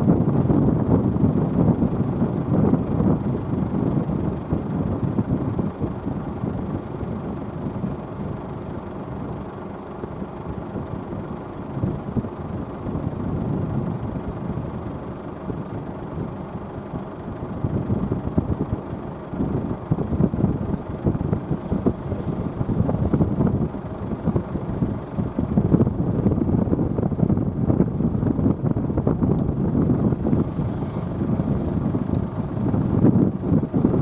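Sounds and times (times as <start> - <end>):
tractor diesel engine running: 0.0 - 34.0
wind rumbling on microphone: 0.0 - 34.0.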